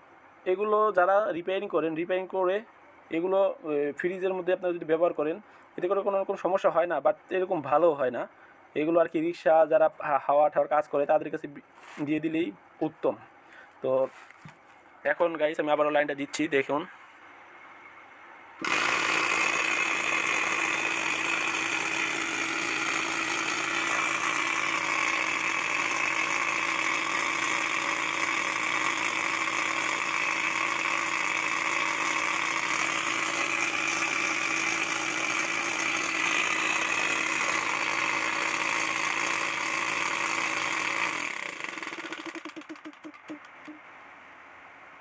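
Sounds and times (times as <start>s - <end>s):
compressor running: 18.6s - 43.8s.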